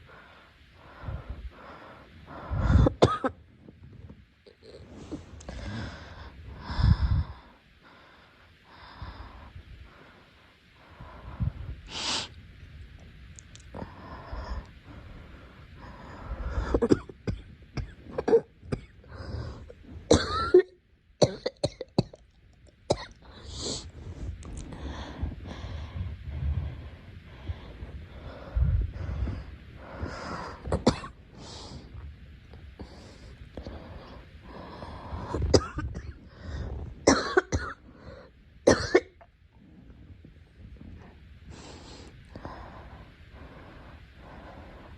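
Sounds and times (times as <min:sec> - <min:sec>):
girl breathing: 0:00.0 - 0:03.0, 0:04.8 - 0:12.4, 0:13.7 - 0:16.8, 0:19.0 - 0:20.0, 0:23.2 - 0:30.7, 0:32.8 - 0:35.5, 0:36.2 - 0:37.0, 0:41.5 - 0:44.9
girl coughing: 0:03.0 - 0:03.4, 0:20.1 - 0:22.1.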